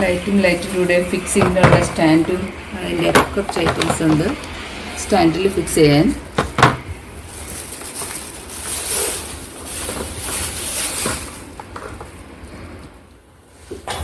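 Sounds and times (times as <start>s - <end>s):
packaging crinkling: 7.0s - 12.4s.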